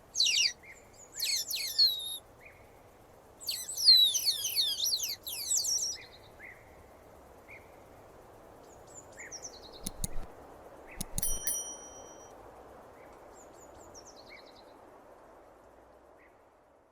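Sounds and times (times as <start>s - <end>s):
otter chirping whistles: 0.0s - 0.6s, 1.2s - 2.2s, 3.4s - 6.0s, 10.9s - 11.6s
soft descending squeaks: 0.2s - 0.5s, 1.2s - 2.2s, 3.5s - 5.8s
sharp clicks: 9.8s - 11.8s
brief ringing tone: 11.0s - 12.3s.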